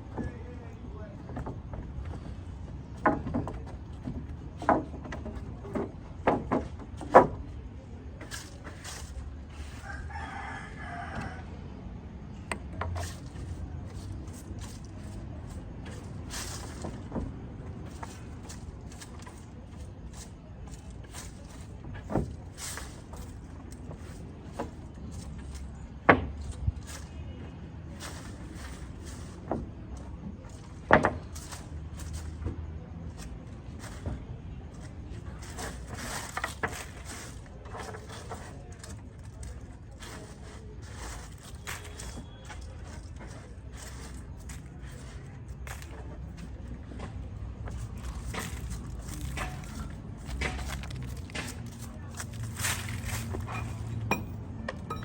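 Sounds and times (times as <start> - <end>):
scattered knocks: 53.5 - 55.0.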